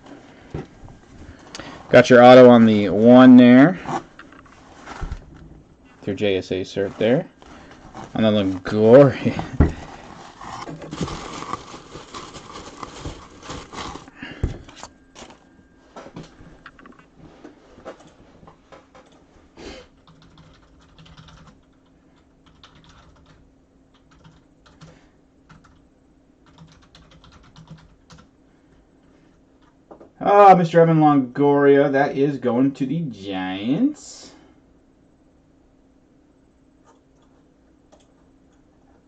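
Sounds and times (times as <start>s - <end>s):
rustling: 3.8s - 18.5s.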